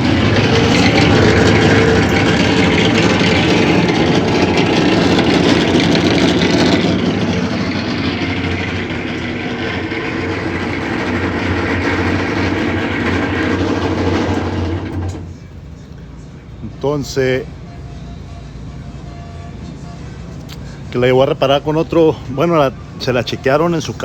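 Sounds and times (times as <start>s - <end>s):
washing machine grinding: 0.0s - 15.5s.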